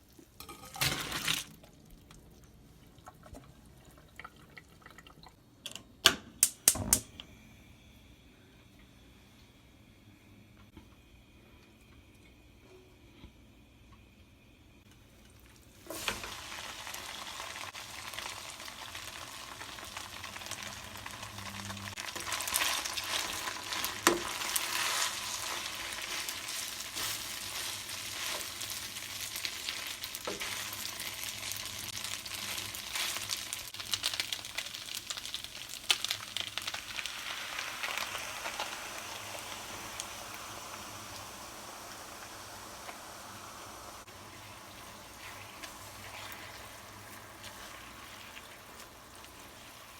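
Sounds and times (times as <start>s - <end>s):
food sizzling in a pan: 15.6s - 49.9s.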